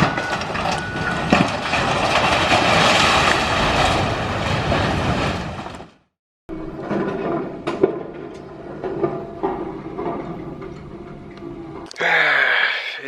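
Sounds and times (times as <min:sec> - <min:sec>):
crunching grinding debris: 0:00.0 - 0:06.1.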